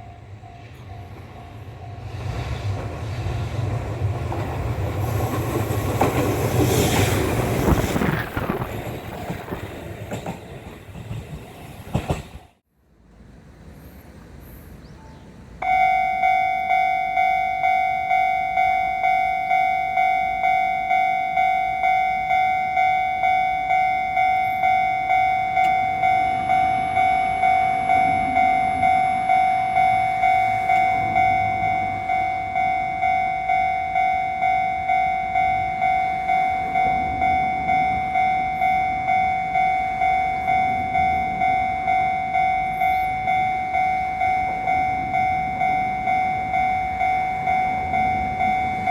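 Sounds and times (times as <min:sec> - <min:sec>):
level-crossing alarm dinging: 0:15.6 - 0:48.9.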